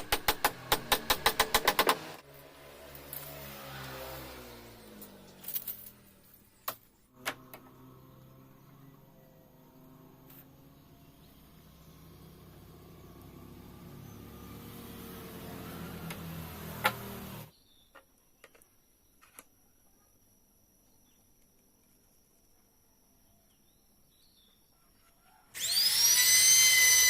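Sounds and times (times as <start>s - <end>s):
vehicle engine hum: 0.6s - 17.5s.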